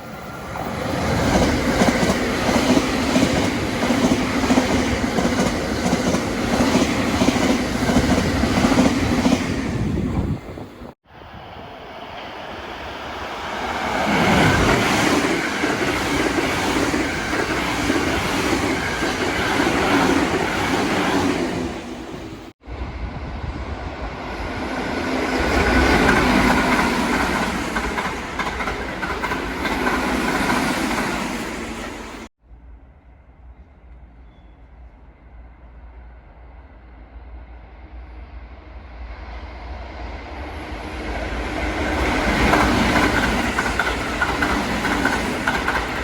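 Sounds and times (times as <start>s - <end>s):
train wheels clacking over rail joints: 42.0s - 46.0s.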